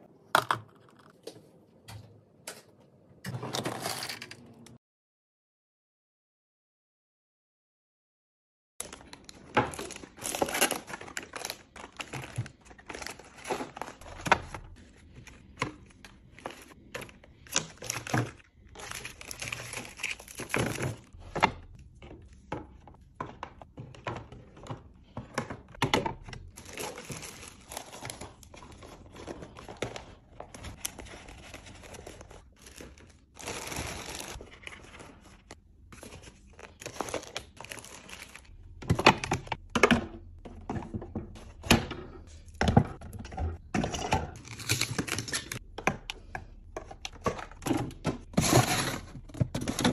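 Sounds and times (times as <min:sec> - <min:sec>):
plastic packaging crinkling and tearing: 0:08.8 - 0:14.8, 0:16.2 - 0:21.2, 0:26.5 - 0:35.2, 0:36.0 - 0:38.5, 0:44.4 - 0:45.6.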